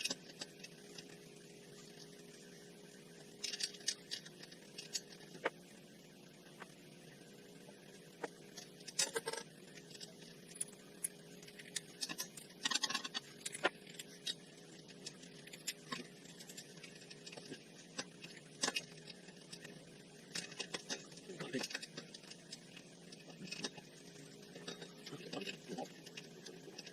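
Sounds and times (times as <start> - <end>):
faint steady hum: 0.0 - 26.9
hand tools and metal parts clicking: 3.4 - 5.5, 8.6 - 14.4
metal parts clattering: 8.9 - 9.4.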